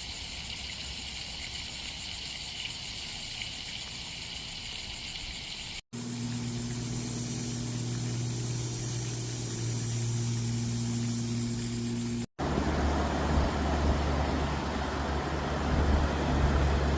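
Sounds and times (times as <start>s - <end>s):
motor humming: 6.0s - 16.9s.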